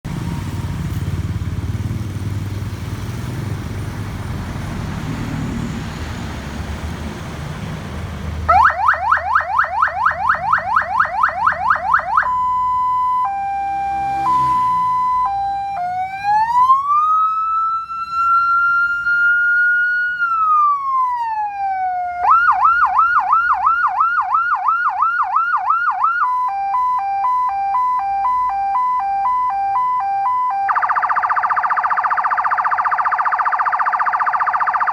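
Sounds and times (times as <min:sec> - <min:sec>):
electronic emergency siren: 0:00.1 - 0:01.3, 0:08.4 - 0:34.9.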